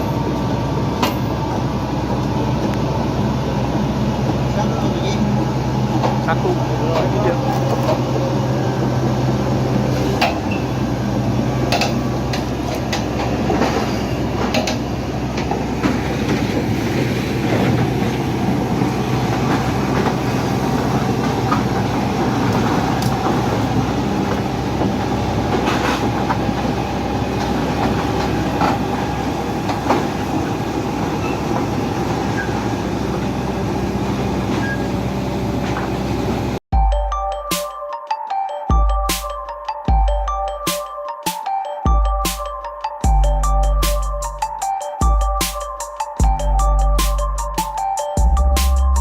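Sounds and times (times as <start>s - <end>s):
heavy vehicle engine droning: 0.0s - 36.7s.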